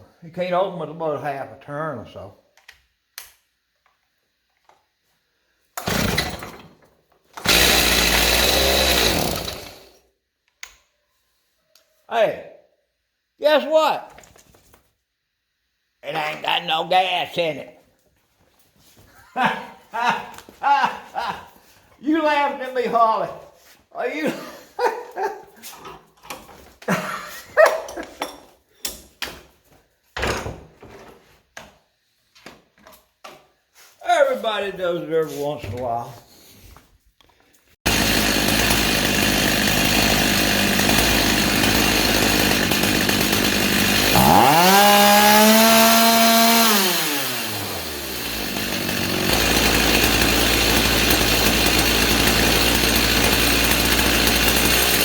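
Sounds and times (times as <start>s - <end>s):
chainsaw pull-starting and running: 5.8s - 10.0s, 37.9s - 55.0s
dog barking: 27.6s - 28.0s.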